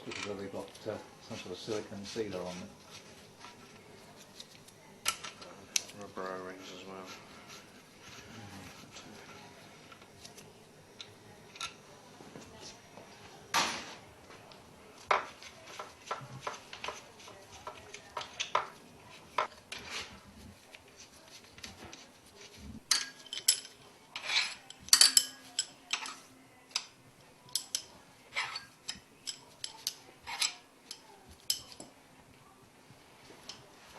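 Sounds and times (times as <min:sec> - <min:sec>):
tools clinking on metal: 0:22.9 - 0:26.9, 0:27.5 - 0:31.9.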